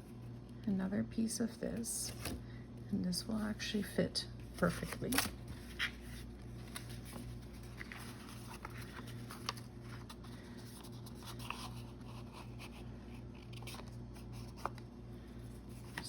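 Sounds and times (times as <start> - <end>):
steady low hum: 0.0 - 16.0
paper rustling: 4.5 - 14.8.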